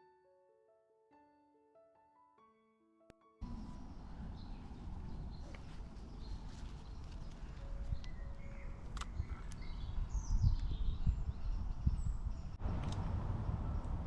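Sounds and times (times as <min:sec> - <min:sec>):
small birds chirping: 0:03.4 - 0:12.6.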